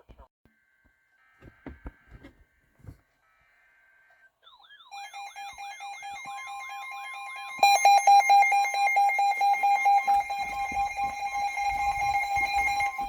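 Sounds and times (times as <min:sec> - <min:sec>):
warbling siren-like tone: 0:04.5 - 0:13.0.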